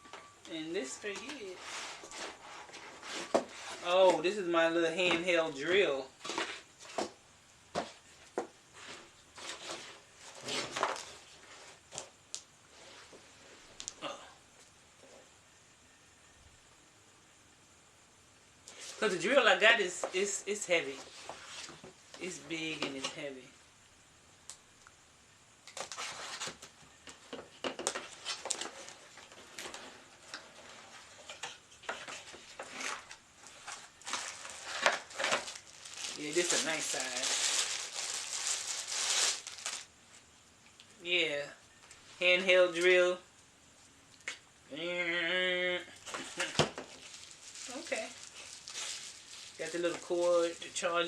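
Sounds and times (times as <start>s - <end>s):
packaging rustling: 27.8s - 39.9s, 46.2s - 50.8s.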